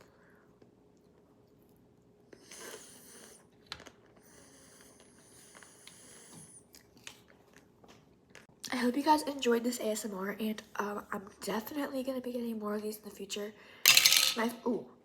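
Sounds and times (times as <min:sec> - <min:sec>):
hissing breaths: 0:04.2 - 0:06.6
chewing crunchy dessert: 0:06.6 - 0:08.7.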